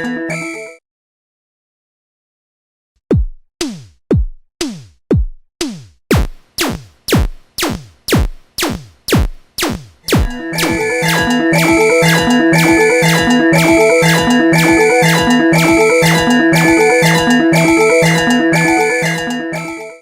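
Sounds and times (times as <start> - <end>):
drum machine thumps sliding down: 3.1 - 11.4.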